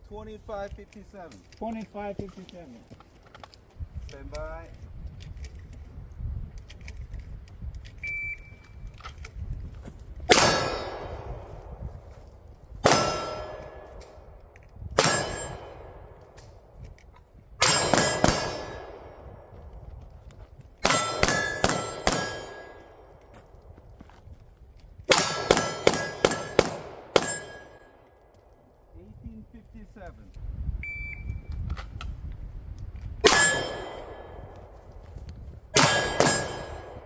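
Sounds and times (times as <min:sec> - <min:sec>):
steel targets ringing: 0:10.3 - 0:11.4, 0:12.8 - 0:14.2, 0:15.0 - 0:16.2, 0:17.6 - 0:19.2, 0:20.8 - 0:23.1, 0:25.1 - 0:28.0, 0:33.2 - 0:34.6, 0:35.8 - 0:37.0
pistol shots: 0:10.3 - 0:11.8, 0:12.8 - 0:14.3, 0:15.0 - 0:16.7, 0:17.6 - 0:19.5, 0:20.8 - 0:23.2, 0:25.1 - 0:28.0, 0:33.2 - 0:34.8, 0:35.8 - 0:37.0
shot timer beep: 0:30.8 - 0:31.4.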